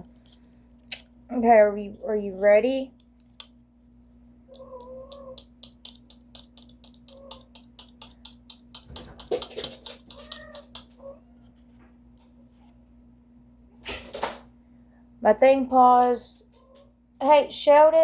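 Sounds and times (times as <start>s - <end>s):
noisemaker clicking: 4.5s - 11.0s.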